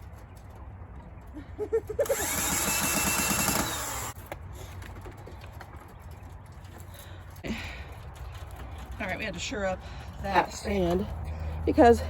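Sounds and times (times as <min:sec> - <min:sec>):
power drill driving screw: 0:02.0 - 0:04.2.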